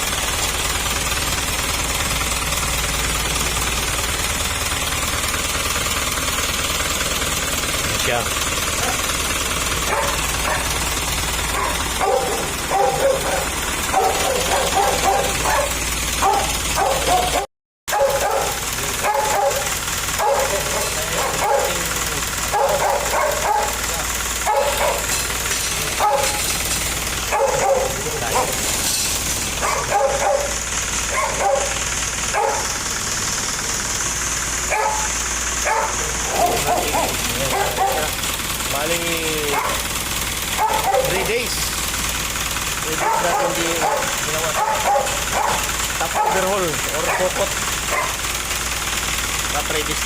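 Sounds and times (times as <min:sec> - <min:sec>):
dog barking and yipping: 0:09.8 - 0:32.8, 0:34.6 - 0:38.2, 0:39.4 - 0:41.4, 0:42.9 - 0:48.3.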